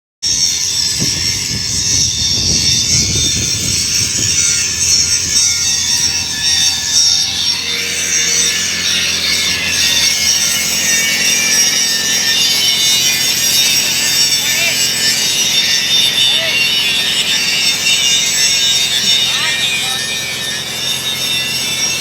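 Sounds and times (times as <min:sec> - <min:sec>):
welding arc crackling hiss: 0:00.2 - 0:22.0.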